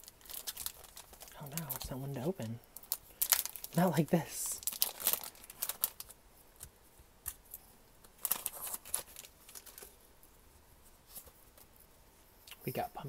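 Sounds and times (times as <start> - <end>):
plastic and foil packaging crinkling: 0.0 - 10.0.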